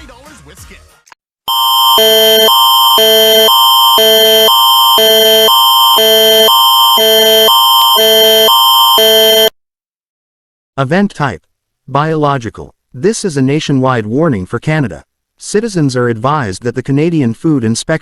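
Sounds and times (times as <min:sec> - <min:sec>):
electronic alert tones alternating: 0:01.5 - 0:09.6.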